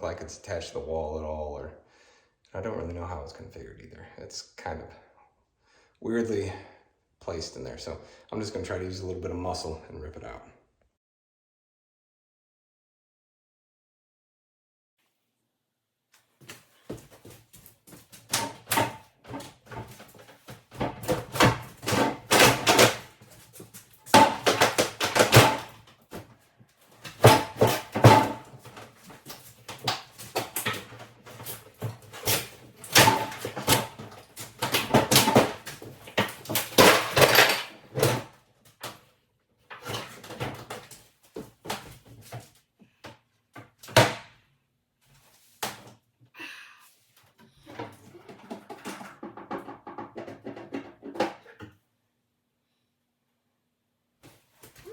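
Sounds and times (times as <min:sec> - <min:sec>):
banging on wood: 0:16.9 - 0:26.3, 0:26.9 - 0:38.3, 0:47.7 - 0:51.7
wood cracking and creaking: 0:17.9 - 0:26.2, 0:26.9 - 0:38.9.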